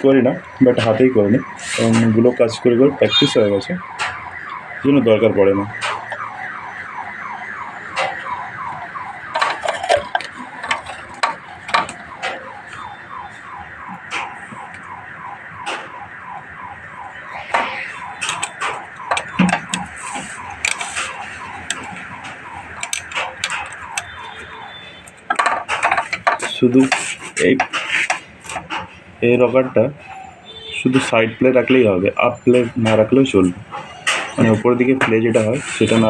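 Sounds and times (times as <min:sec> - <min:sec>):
sharp metallic clicks: 0:17.4 - 0:28.9.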